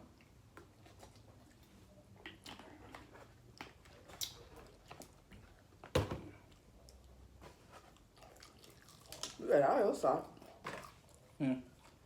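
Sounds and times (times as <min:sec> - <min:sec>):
quiet chewing: 0:00.0 - 0:05.7, 0:06.4 - 0:09.4
food handling clicks and crackles: 0:00.2 - 0:07.2, 0:07.8 - 0:09.5.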